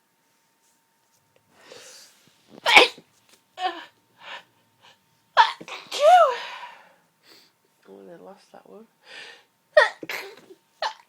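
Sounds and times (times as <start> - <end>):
woman sneezing: 2.6 - 3.0, 5.4 - 6.6, 9.8 - 11.0.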